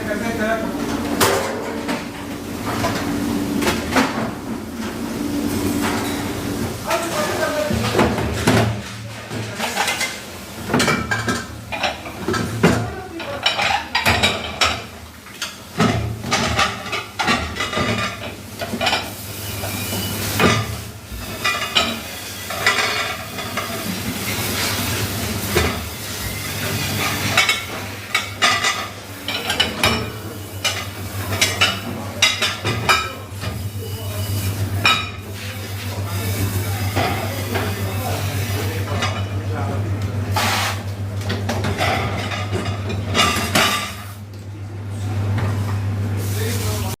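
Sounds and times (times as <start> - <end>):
low machine hum: 0.0 - 46.9
dishes and cutlery clattering: 7.7 - 19.2, 20.4 - 33.2, 41.2 - 44.1.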